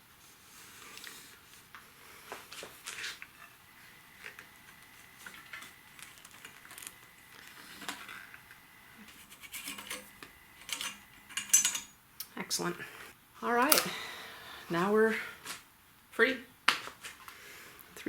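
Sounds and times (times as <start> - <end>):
tools clicking and rattling: 9.4 - 12.0.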